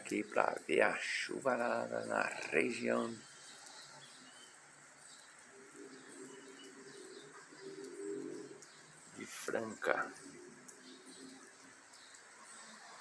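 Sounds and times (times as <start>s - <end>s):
rain hissing: 0.0s - 13.0s
dove cooing: 5.4s - 11.8s.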